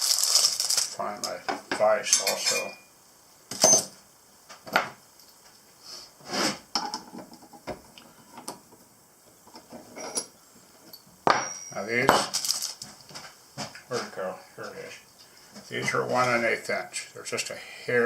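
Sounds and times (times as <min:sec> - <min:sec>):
hard objects clattering: 0:11.3 - 0:12.9.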